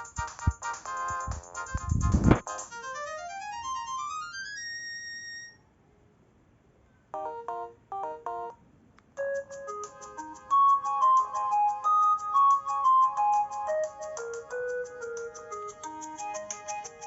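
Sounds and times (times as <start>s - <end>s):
mobile phone ringtones: 7.2s - 8.6s.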